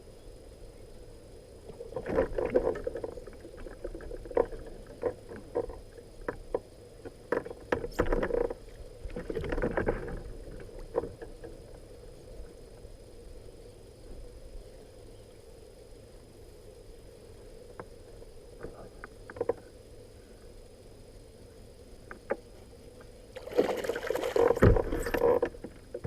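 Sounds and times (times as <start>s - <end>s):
faint steady hum: 0.0s - 26.0s
knocks and clunks on a boat: 1.7s - 11.8s, 18.6s - 19.7s, 22.0s - 22.5s, 23.6s - 26.0s
splashing or scraping: 23.4s - 25.6s.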